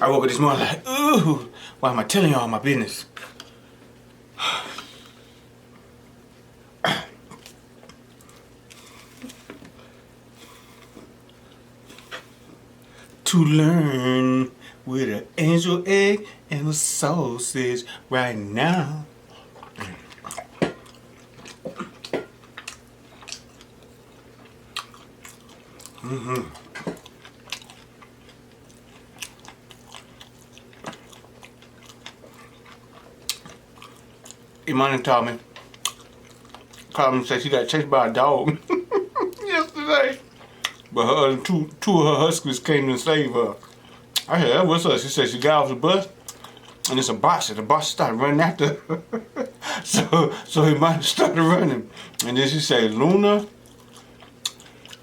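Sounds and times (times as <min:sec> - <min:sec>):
faint steady hum: 0:00.0 - 0:55.0
man coughing: 0:06.8 - 0:07.2, 0:49.4 - 0:50.5
chewing with lip smacks: 0:07.3 - 0:09.8, 0:19.3 - 0:34.7, 0:35.4 - 0:37.0, 0:40.2 - 0:41.0, 0:43.5 - 0:44.3, 0:46.1 - 0:47.0, 0:53.4 - 0:55.0.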